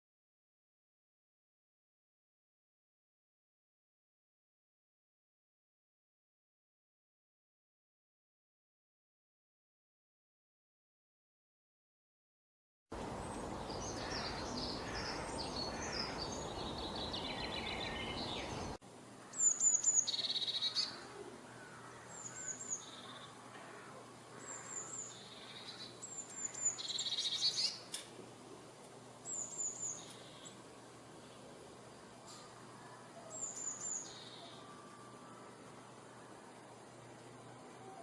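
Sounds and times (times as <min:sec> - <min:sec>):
birds calling and singing: 0:13.0 - 0:38.0.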